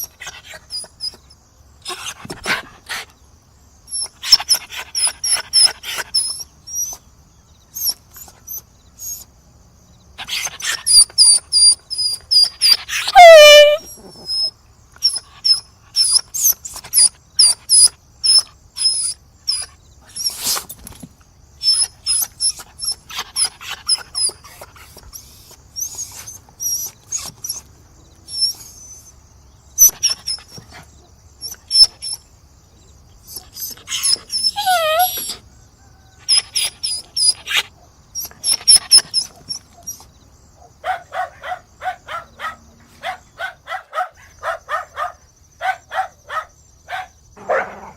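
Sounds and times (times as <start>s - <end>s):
dog yelping: 1.8s - 3.0s, 3.9s - 7.0s, 7.8s - 9.3s, 10.2s - 20.6s, 21.6s - 27.7s, 28.3s - 29.2s, 29.8s - 30.8s, 31.4s - 32.2s, 33.2s - 35.4s, 36.2s - 40.1s, 40.8s - 47.9s
dogs barking: 12.7s - 14.4s, 36.6s - 47.9s.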